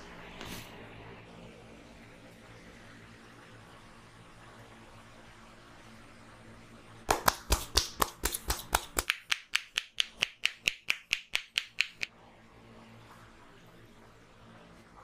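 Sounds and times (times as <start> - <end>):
hands slapping head: 7.1 - 12.1.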